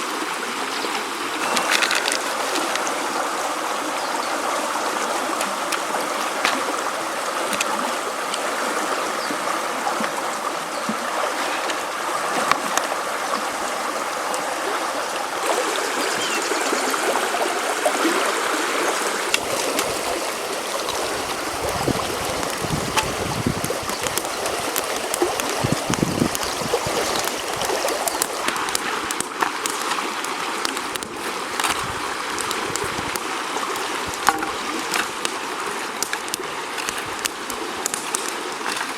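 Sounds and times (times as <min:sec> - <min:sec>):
river rushing: 0:00.0 - 0:38.9
sharp ticks and knocks: 0:22.4 - 0:35.4, 0:36.0 - 0:38.9.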